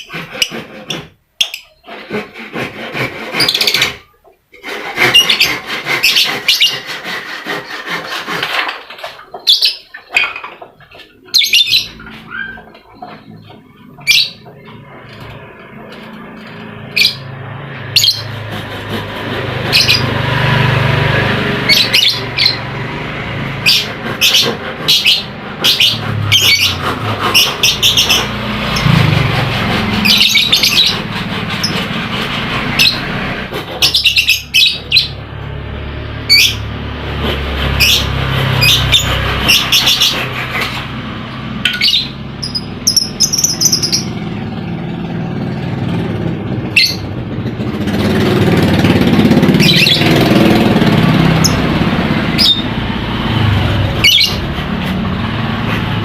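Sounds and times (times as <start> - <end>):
bird chirping shrilly: 5.1 - 6.9, 11.1 - 15.4, 16.8 - 18.5, 19.6 - 20.2, 21.6 - 22.7, 23.6 - 29.0, 30.0 - 31.8, 33.8 - 35.2, 36.2 - 36.7, 37.7 - 40.6, 41.7 - 44.3, 49.6 - 50.3, 52.4 - 52.8, 54.0 - 54.4.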